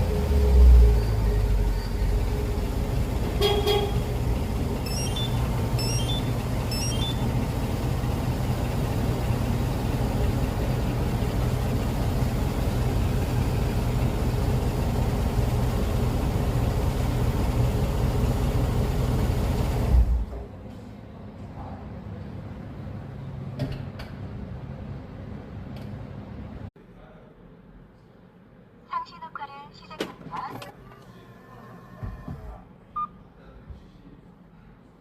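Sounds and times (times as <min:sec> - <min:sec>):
car engine idling: 0:00.0 - 0:20.4
car horn toot: 0:03.2 - 0:04.2
high-pitched beeps: 0:04.8 - 0:07.2.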